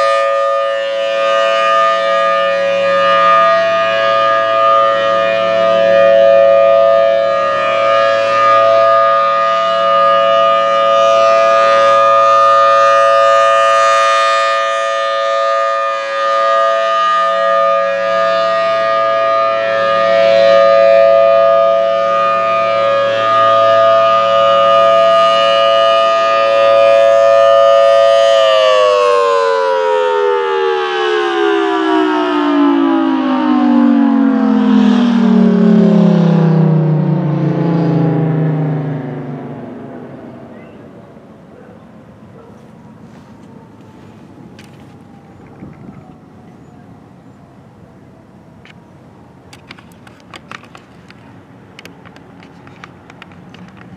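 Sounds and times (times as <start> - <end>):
warning siren wailing: 0.0 - 53.9.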